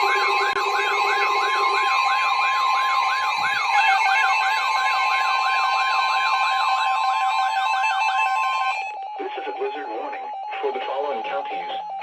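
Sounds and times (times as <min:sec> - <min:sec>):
electronic siren alert tone: 0:00.0 - 0:12.0.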